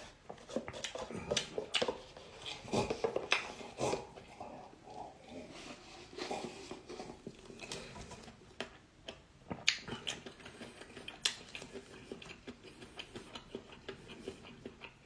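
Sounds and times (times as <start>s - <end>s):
chewing noodles: 0.0s - 15.0s.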